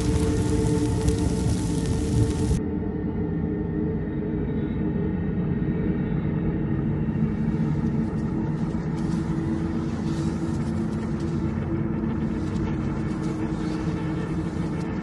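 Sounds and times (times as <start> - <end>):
faint hiss: 0.0 - 2.6
low rumbling drone: 0.0 - 15.0.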